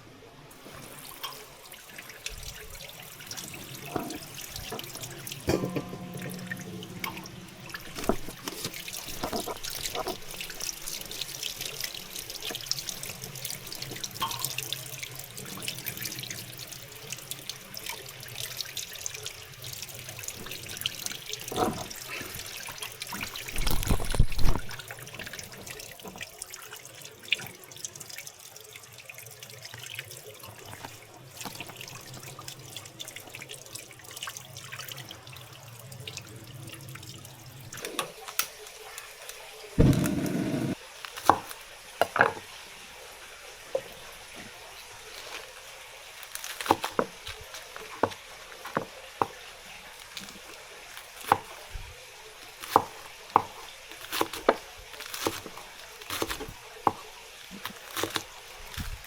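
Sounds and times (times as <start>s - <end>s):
tap water running into sink: 0.5s - 59.0s
deep thump: 39.8s - 40.8s.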